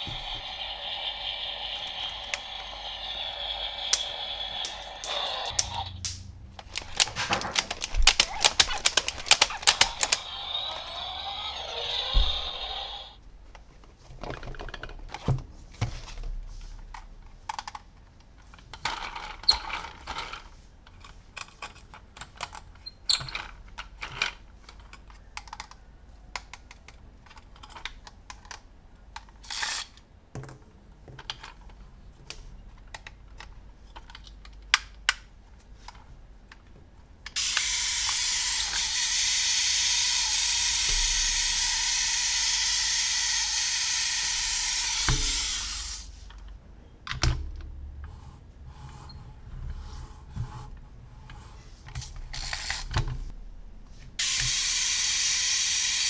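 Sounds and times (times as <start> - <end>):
plastic pieces clicking and tapping: 4.6 - 11.3
packaging crinkling: 4.7 - 12.8.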